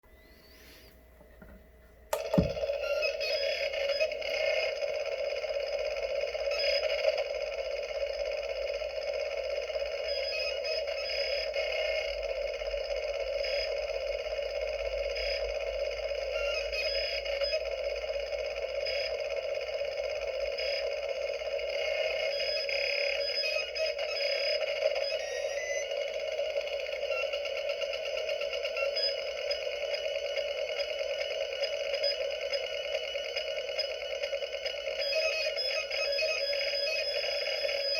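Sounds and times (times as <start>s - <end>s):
electronic hum of noisy tones: 0.0s - 37.9s
short electronic beeps and chirps: 2.2s - 4.7s, 16.2s - 17.7s, 21.7s - 37.9s.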